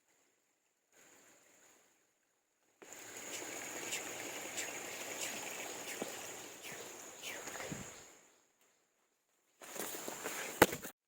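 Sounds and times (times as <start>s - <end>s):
faint ticks: 2.8s - 8.0s
stream water rushing: 2.8s - 8.3s.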